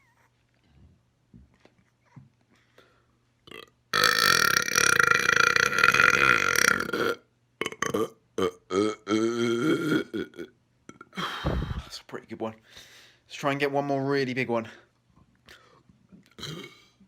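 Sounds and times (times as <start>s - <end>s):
man burping: 3.5s - 11.9s, 16.4s - 17.0s.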